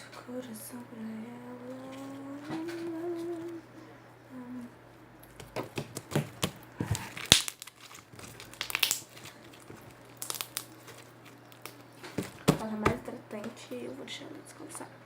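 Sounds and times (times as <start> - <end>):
slime crackling and clicking: 5.3 - 12.6.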